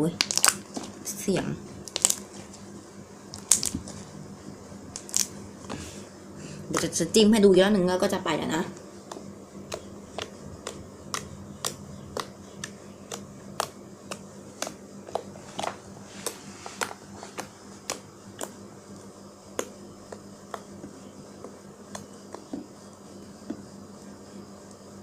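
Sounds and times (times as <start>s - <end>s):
slime popping when poked: 9.1s - 18.6s.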